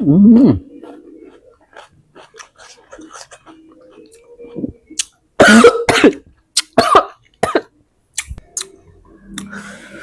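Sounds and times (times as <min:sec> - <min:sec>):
person coughing harshly: 0:05.4 - 0:07.7.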